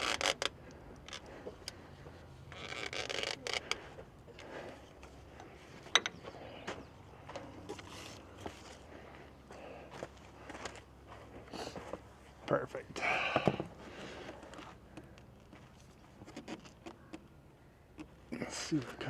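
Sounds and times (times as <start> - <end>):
hand tool clicks and knocks: 5.9 - 6.3.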